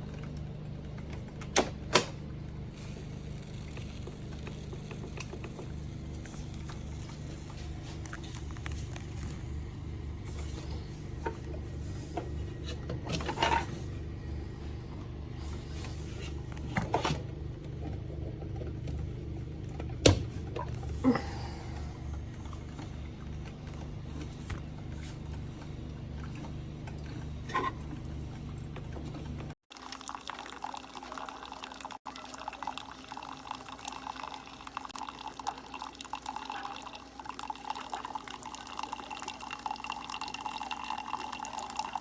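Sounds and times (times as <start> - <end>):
pulsing mechanical hum: 0.0 - 29.6.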